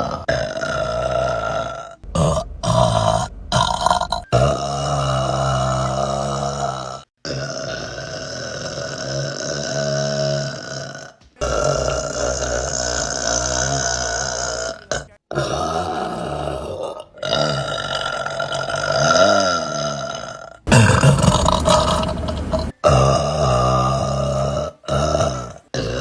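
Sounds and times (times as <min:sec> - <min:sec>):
woman burping: 0:10.7 - 0:26.0.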